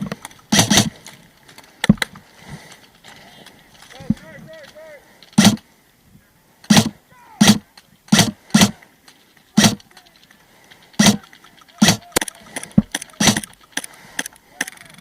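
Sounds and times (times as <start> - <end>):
airsoft rifle shots: 0.5 - 1.0, 5.4 - 5.6, 6.7 - 8.8, 9.6 - 9.9, 11.0 - 13.5.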